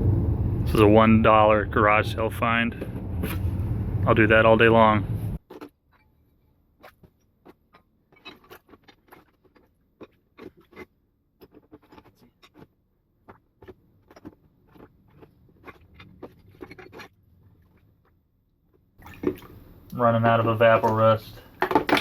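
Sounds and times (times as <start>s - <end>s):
metal vise parts clicking and scraping: 21.6s - 22.0s.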